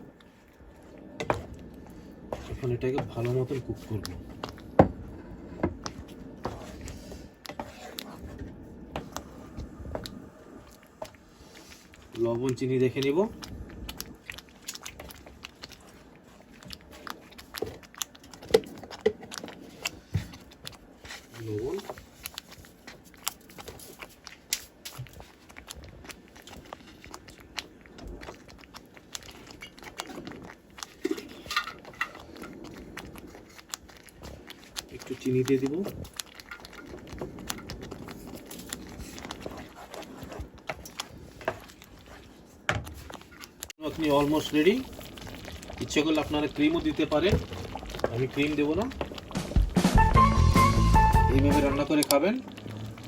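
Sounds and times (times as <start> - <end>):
spoon stirring gravy in a pan: 0.8 - 10.0, 28.2 - 49.8.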